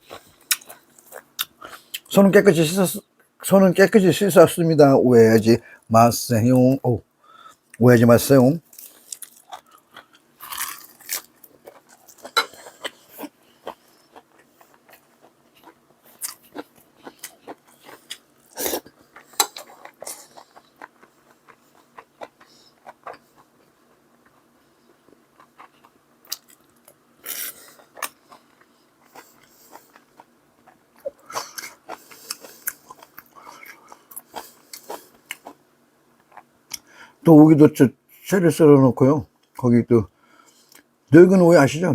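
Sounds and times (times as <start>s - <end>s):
person chewing crunchy food: 0.0s - 2.1s, 8.6s - 36.9s.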